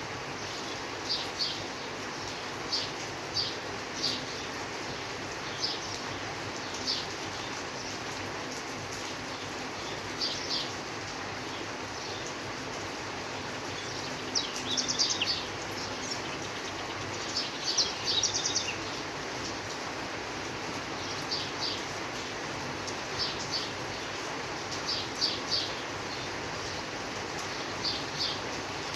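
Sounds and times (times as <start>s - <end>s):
steady rain hiss: 0.0s - 28.9s
birds chirping: 11.4s - 19.6s, 20.8s - 22.0s, 23.0s - 28.9s.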